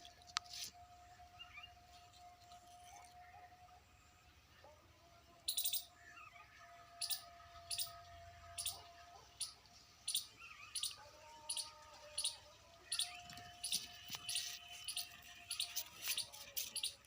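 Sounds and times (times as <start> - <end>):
small bird chirping: 5.4 - 6.3, 7.0 - 8.8, 9.4 - 17.0.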